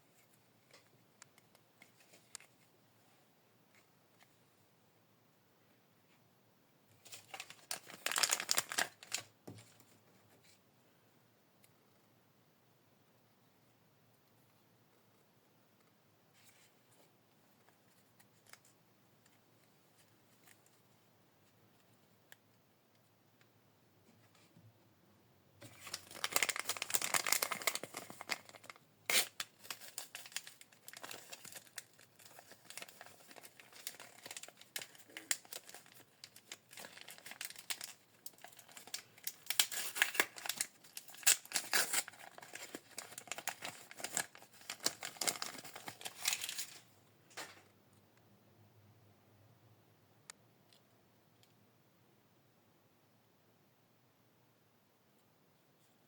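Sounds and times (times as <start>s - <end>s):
plastic packaging crinkling and tearing: 7.0s - 9.3s, 25.6s - 46.9s.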